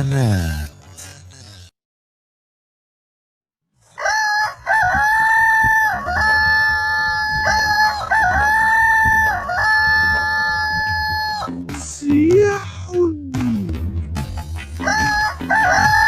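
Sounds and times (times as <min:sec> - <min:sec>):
rooster crowing: 0:03.8 - 0:11.5, 0:14.8 - 0:16.0.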